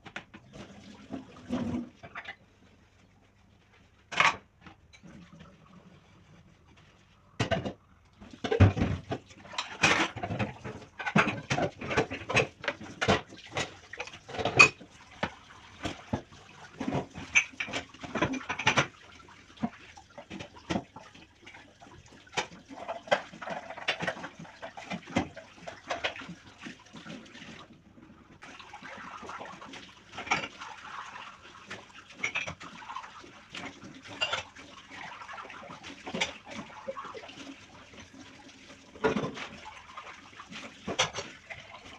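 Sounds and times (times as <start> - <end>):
dishes clattering: 7.4 - 7.8, 8.4 - 14.8, 16.8 - 18.9, 32.2 - 32.6, 34.1 - 34.6, 40.8 - 41.4.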